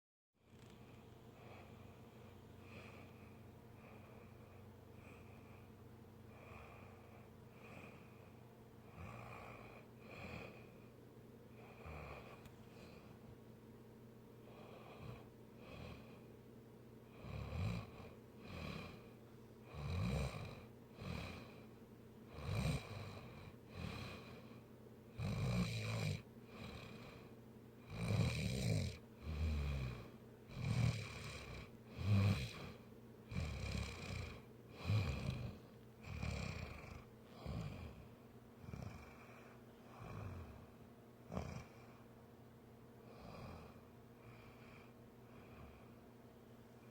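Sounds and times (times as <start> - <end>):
low snoring: 6.3 - 10.8, 11.5 - 13.1, 14.4 - 16.3, 17.0 - 21.6, 22.3 - 42.1, 43.0 - 46.0.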